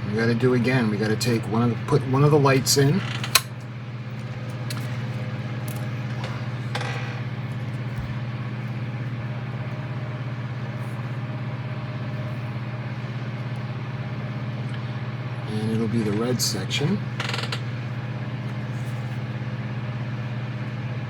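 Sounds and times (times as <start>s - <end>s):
low background hum: 0.0s - 21.0s.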